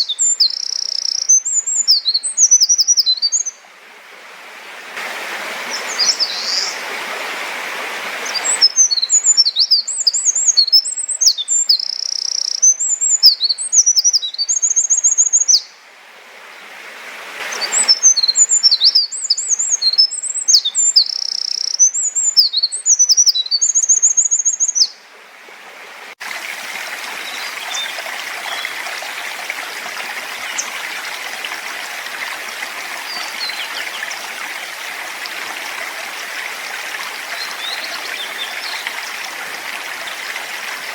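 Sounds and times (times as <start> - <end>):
faint distant bird chirps: 0.0 - 3.6
songbird singing trills: 0.0 - 3.6, 8.2 - 15.7, 17.6 - 25.0
stream rushing: 2.2 - 10.1, 15.6 - 20.0, 24.8 - 40.9.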